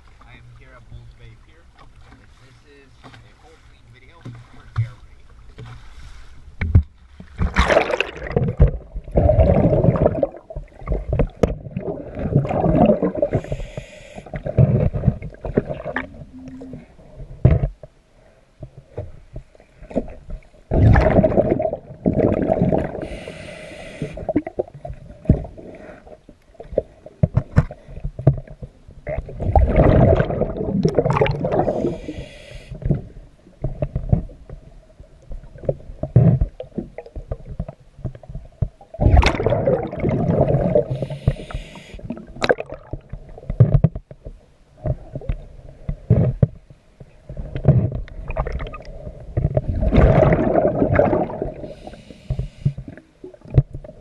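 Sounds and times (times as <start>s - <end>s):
exhaled bubbles gurgling underwater: 7.4s - 17.9s, 18.8s - 44.0s, 44.8s - 46.5s, 47.1s - 54.0s
regulator air hiss: 13.3s - 14.3s, 23.0s - 24.2s, 31.7s - 32.8s, 40.9s - 42.0s, 51.6s - 52.8s.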